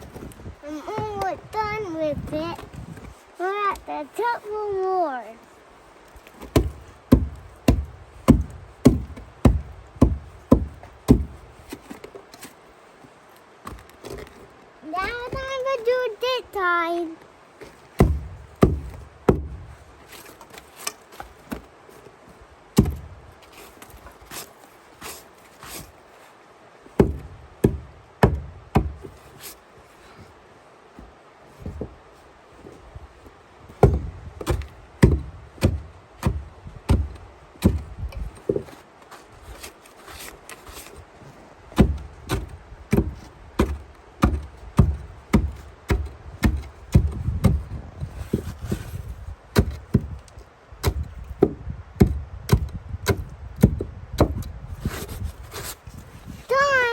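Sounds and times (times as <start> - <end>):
ice pick striking ice: 6.4 - 12.0, 18.0 - 21.6, 22.8 - 23.2, 27.0 - 29.2, 33.8 - 37.9, 41.8 - 47.6, 48.3 - 50.2, 50.8 - 55.6.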